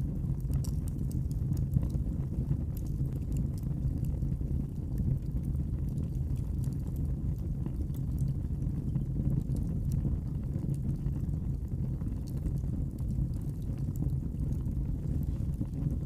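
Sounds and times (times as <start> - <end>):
fire crackling and popping: 0.0 - 16.0
fire flames rumbling: 0.0 - 16.0.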